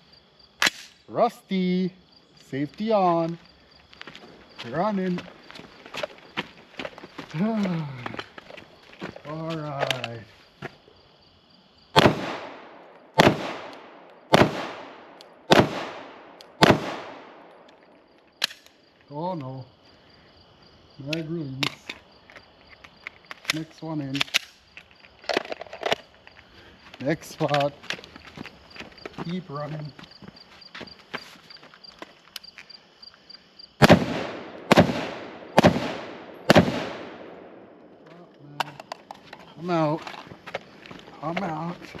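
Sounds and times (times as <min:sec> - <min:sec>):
rifle shots echoing: 0:12.0 - 0:17.7, 0:33.8 - 0:37.9.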